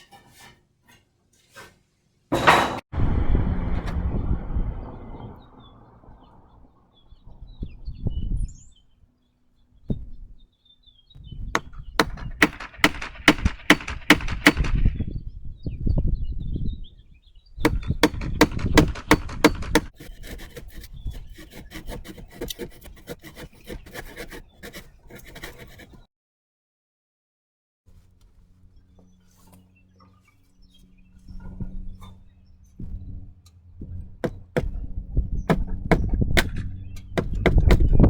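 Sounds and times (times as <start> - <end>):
light scraping strokes: 0.0 - 1.9, 19.9 - 26.1, 27.9 - 34.0
hand tool working wood: 0.0 - 2.4, 11.6 - 14.8, 17.6 - 26.1, 27.9 - 38.0.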